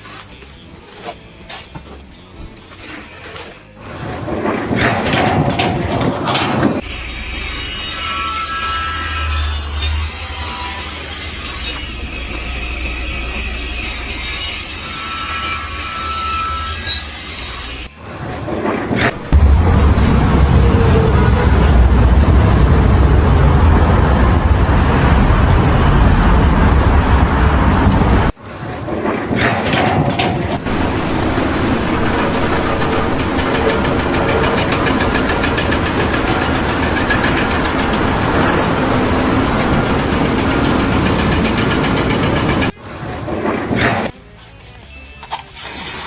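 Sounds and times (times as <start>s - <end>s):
engine with fast pulse: 18.2s - 28.3s, 30.6s - 42.8s
loud low engine running: 19.0s - 28.4s, 29.4s - 42.8s.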